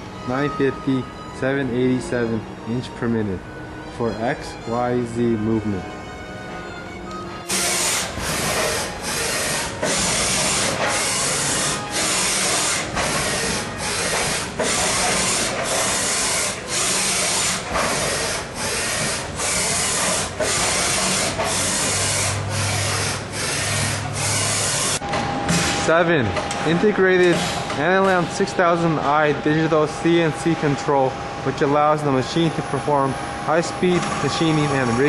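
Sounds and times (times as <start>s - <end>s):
machining center rushing hiss: 7.5s - 35.0s.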